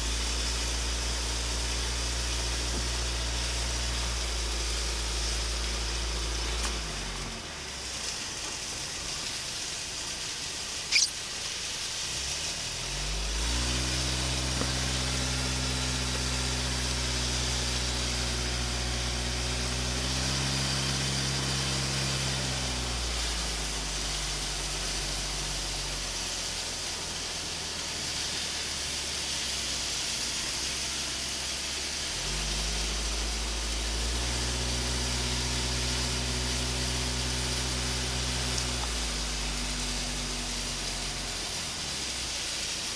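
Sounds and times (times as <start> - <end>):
car engine hum: 0.0 - 42.9
road noise: 0.0 - 42.9
short sharp squeak: 10.9 - 11.2.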